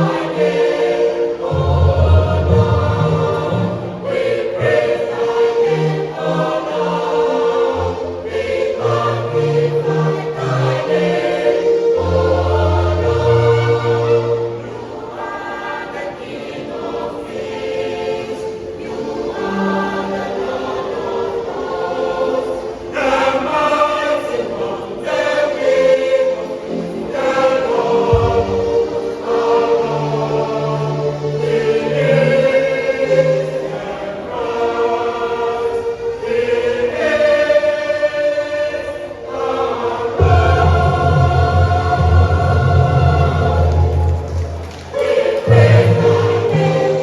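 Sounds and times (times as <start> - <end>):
children's choir singing gospel: 0.0 - 47.0
low held bass notes: 1.5 - 4.0.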